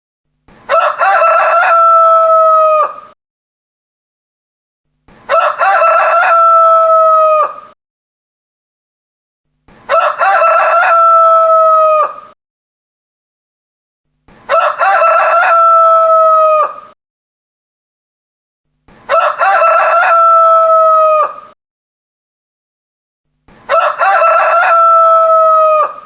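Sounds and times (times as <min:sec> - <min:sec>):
rooster crowing: 0:00.7 - 0:03.2, 0:05.3 - 0:07.8, 0:09.9 - 0:12.4, 0:14.5 - 0:17.0, 0:19.1 - 0:21.6, 0:23.7 - 0:26.0.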